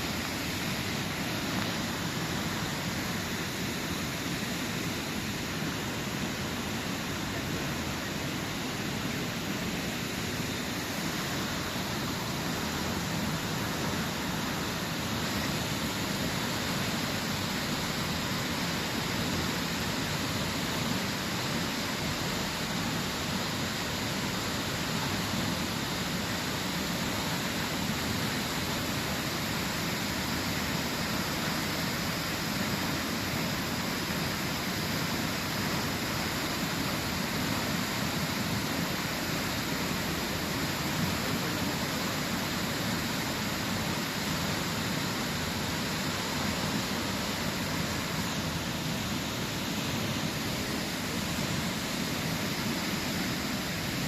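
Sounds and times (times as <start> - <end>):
waterfall rushing: 0.0 - 54.0.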